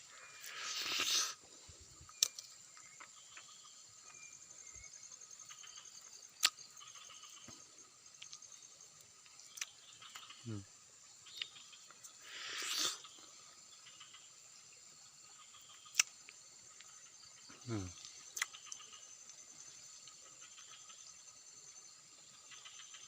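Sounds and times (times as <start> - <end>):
insects chirring: 0.0 - 23.0.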